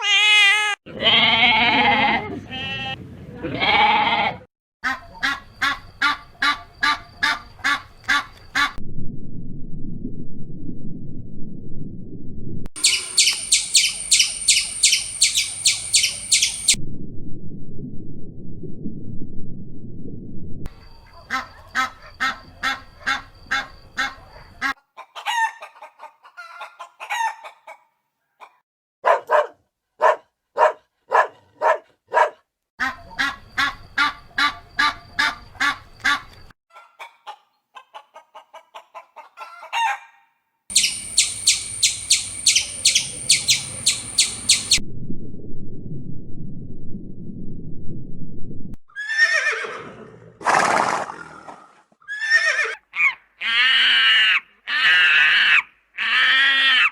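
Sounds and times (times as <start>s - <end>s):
poultry clucking and calling: 4.8s - 8.8s, 12.8s - 16.8s, 21.2s - 28.6s, 32.8s - 44.8s
shrill pulsing poultry call: 4.8s - 8.8s, 12.8s - 16.8s, 21.2s - 25.6s, 32.8s - 36.9s, 40.7s - 44.8s, 52.1s - 56.9s.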